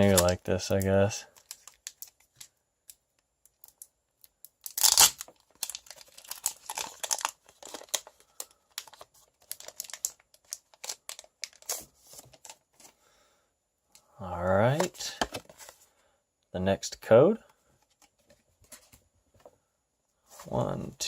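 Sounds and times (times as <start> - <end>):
foil wrapper crinkling: 4.6 - 11.8
foil wrapper ripping: 4.7 - 8.0.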